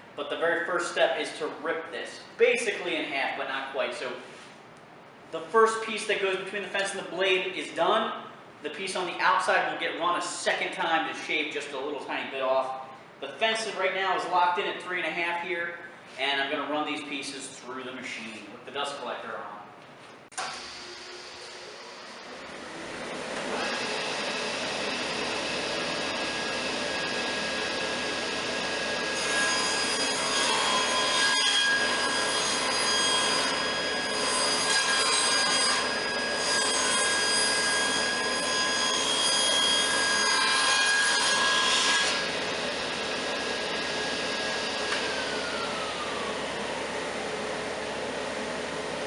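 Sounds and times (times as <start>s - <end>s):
table saw cutting wood: 20.4s - 49.0s
motor spinning down: 43.9s - 48.2s.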